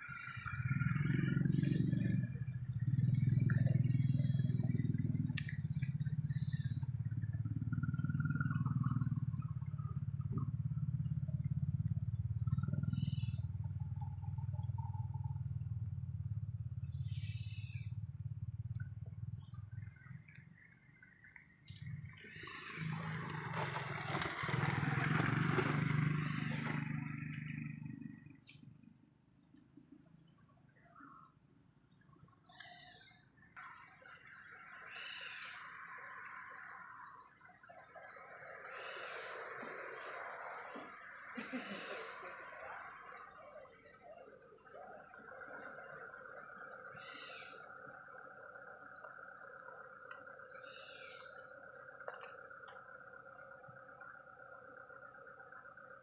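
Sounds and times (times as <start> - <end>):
passing motor vehicle: 0.0 - 29.6, 33.6 - 56.0
engine idling: 0.0 - 56.0.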